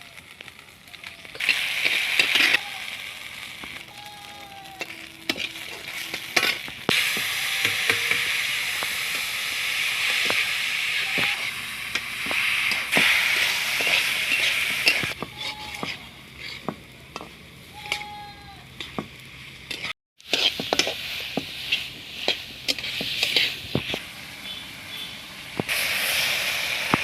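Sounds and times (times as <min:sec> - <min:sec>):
food sizzling in a pan: 0:00.0 - 0:18.2, 0:18.8 - 0:27.0
spatula tapping and scraping pan: 0:19.7 - 0:24.0.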